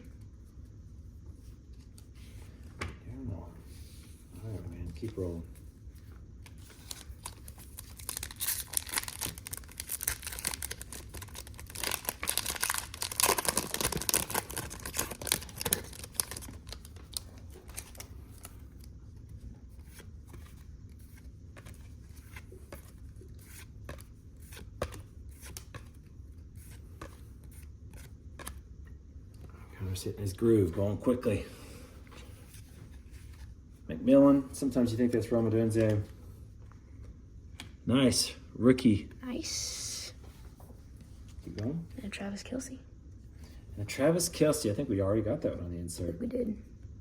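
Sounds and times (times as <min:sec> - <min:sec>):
foil wrapper tearing and crinkling: 0:06.9 - 0:18.5.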